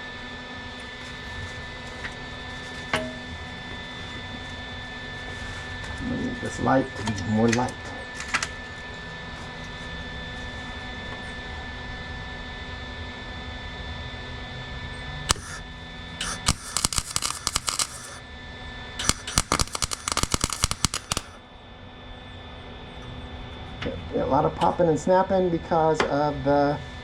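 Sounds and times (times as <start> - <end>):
popping and snapping: 15.3 - 15.6, 16.2 - 18.2, 19.0 - 21.4
welding arc crackling: 15.3 - 15.6, 16.2 - 18.2, 19.0 - 21.4
steady electrical hum: 15.3 - 18.2, 19.0 - 21.5.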